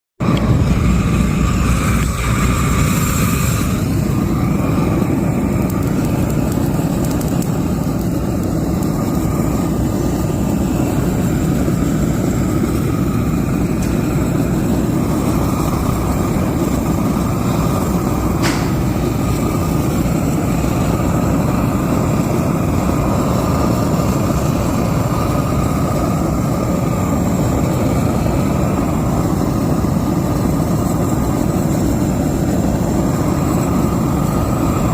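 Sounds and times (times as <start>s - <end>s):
welding arc crackling and hissing: 0.2s - 34.9s
sharp click: 18.4s - 18.9s.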